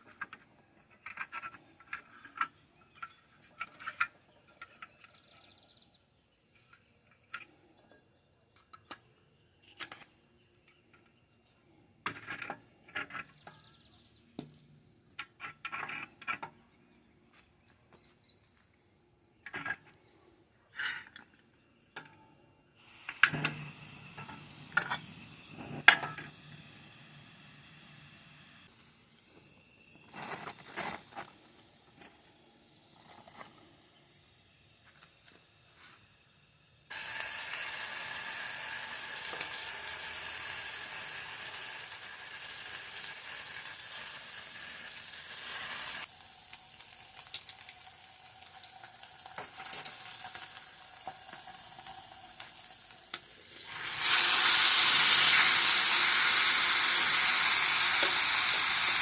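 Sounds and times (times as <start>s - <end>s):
food sizzling in a pan: 36.5s - 59.0s.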